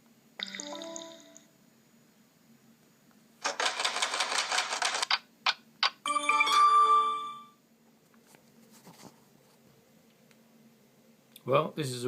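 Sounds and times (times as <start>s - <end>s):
ringing chime: 6.1s - 7.6s.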